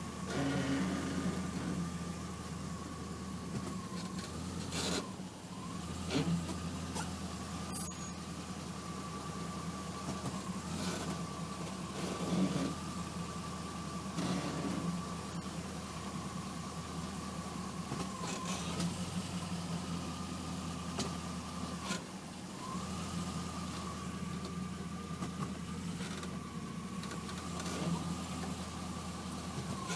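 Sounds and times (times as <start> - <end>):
car engine running: 7.7 - 8.2, 14.8 - 18.0
high-pitched brake squeal: 7.7 - 8.2, 15.2 - 16.1.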